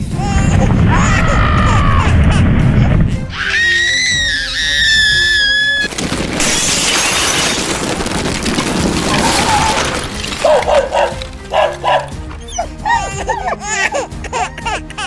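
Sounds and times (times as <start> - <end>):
high held cry: 0.0 - 2.5
debris shattering and crashing: 0.2 - 12.5
dog barking and yelping: 10.4 - 13.6.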